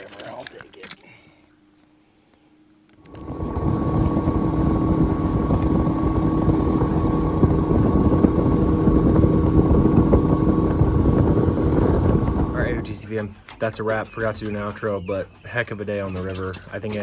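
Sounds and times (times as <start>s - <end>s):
outboard motor running: 3.0s - 13.0s
wind buffeting microphone: 3.1s - 13.1s.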